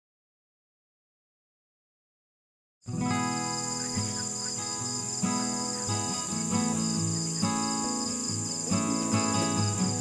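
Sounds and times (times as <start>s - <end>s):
background music melody: 2.9s - 10.0s
cricket trill: 2.9s - 10.0s.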